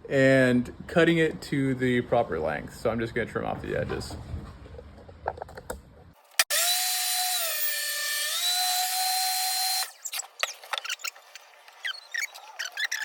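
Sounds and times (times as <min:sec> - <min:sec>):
table saw whining: 0:06.4 - 0:10.2.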